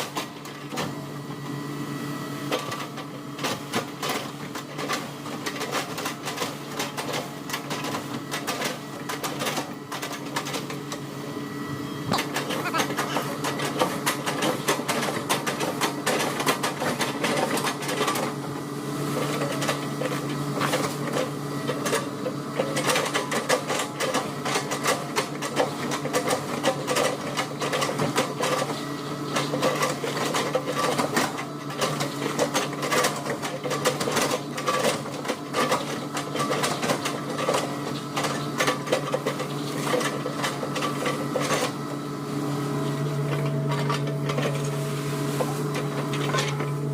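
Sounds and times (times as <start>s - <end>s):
excavator engine running: 0.0s - 46.9s.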